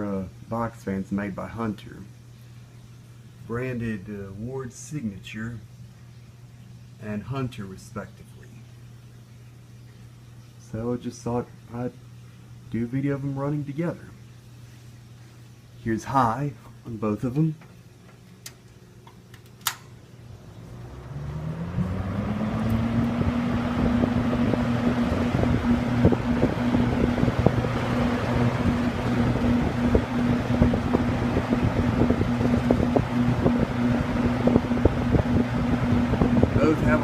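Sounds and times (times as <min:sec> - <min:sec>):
fan motors humming: 0:00.0 - 0:37.0
fan switch clicks: 0:17.3 - 0:20.0
gusty rush of air: 0:20.4 - 0:37.0.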